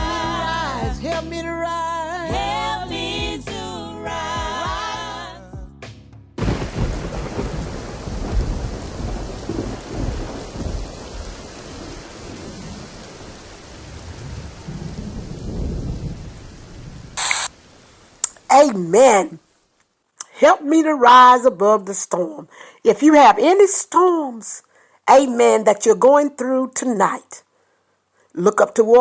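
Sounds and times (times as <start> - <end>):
gospel song: 0.0 - 7.6
thunder rumbles: 6.4 - 17.2
steady rain: 6.4 - 18.7.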